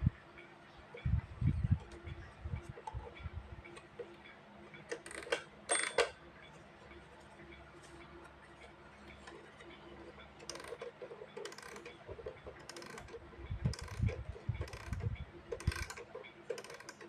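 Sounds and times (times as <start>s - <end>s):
alarm clock ratchet clicks: 4.9s - 6.2s, 10.4s - 17.0s.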